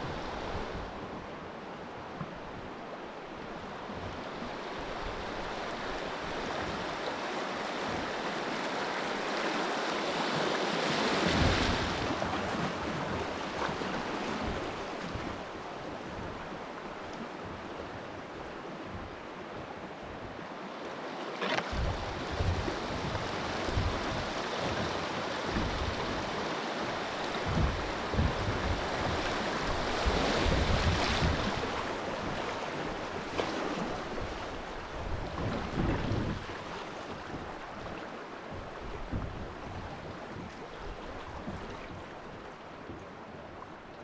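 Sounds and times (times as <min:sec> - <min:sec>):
rushing water: 0:00.0 - 0:44.0
wind buffeting microphone: 0:11.0 - 0:20.5, 0:21.7 - 0:43.8.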